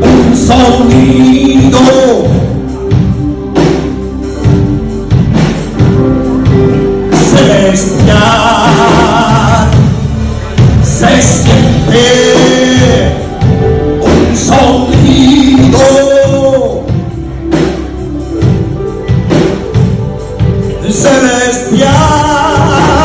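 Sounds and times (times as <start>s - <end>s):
band playing gospel music: 0.0s - 23.0s.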